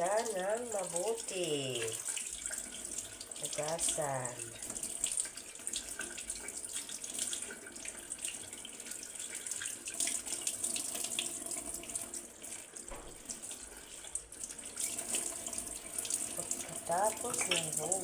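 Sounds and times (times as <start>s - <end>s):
leaves rinsed by hand splashing: 0.0s - 2.3s, 3.0s - 4.8s, 12.9s - 18.0s
tap water running into sink: 0.0s - 18.0s.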